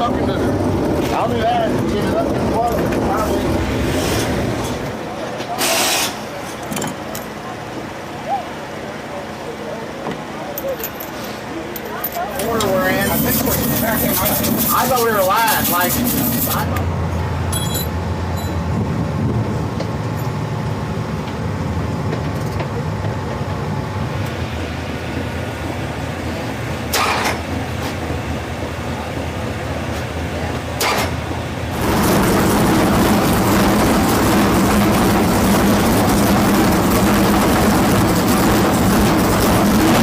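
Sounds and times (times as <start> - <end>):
race car engine running: 12.4 - 17.5, 29.9 - 40.0.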